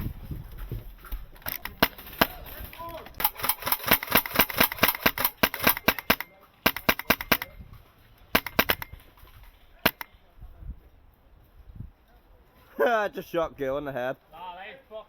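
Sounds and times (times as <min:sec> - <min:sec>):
airsoft guns firing: 0:01.4 - 0:02.6, 0:03.2 - 0:07.6, 0:08.4 - 0:09.2, 0:09.8 - 0:10.2.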